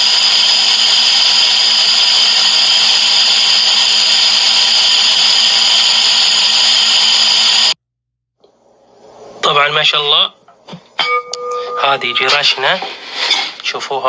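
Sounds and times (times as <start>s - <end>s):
electric grain grinder whirring: 0.0s - 7.8s.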